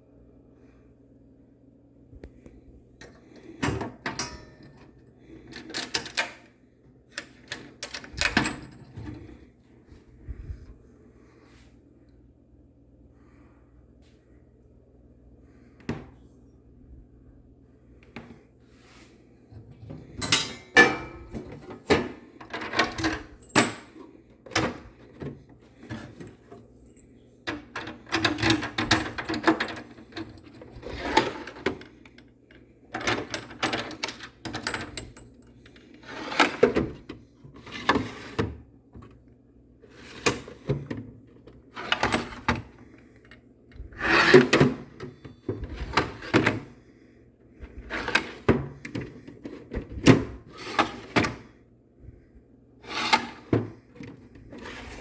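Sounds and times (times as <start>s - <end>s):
tool box drawers sliding: 19.6s - 26.5s, 27.6s - 31.9s, 36.0s - 38.6s, 39.9s - 41.0s, 41.7s - 42.8s, 43.8s - 46.7s, 47.6s - 51.5s, 52.8s - 55.0s.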